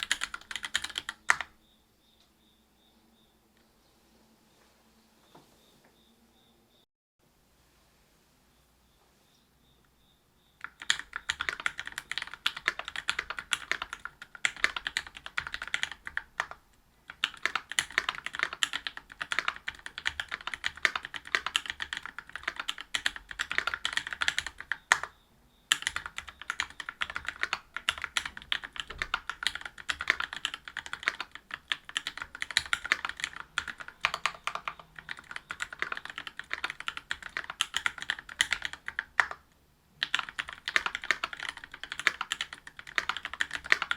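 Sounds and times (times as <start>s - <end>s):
mechanical keyboard typing: 0.0s - 1.5s, 10.6s - 25.1s, 25.7s - 39.4s, 40.0s - 43.9s.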